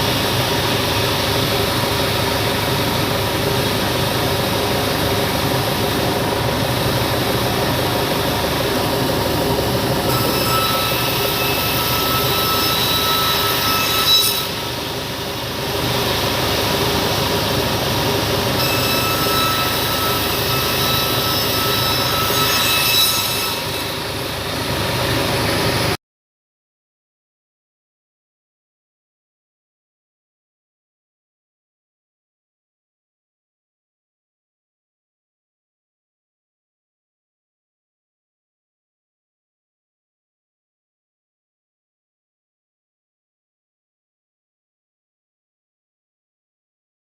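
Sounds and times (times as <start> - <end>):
band saw running: 0.0 - 26.0
saw blade whining through wood: 0.0 - 26.0.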